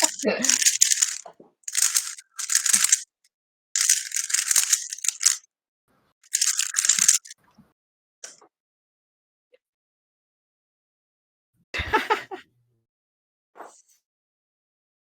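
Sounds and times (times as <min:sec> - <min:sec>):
plastic cube clicking and rattling: 0:00.0 - 0:03.0, 0:03.8 - 0:05.4, 0:06.2 - 0:07.3.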